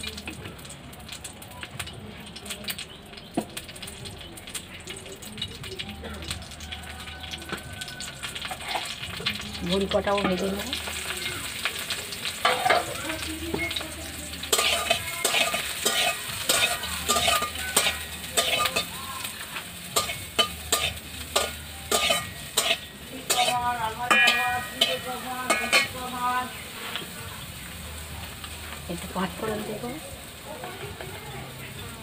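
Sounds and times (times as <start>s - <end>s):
dumplings sizzling in oil: 0.0s - 32.0s
spatula scraping a pan: 8.4s - 9.1s, 14.4s - 27.2s.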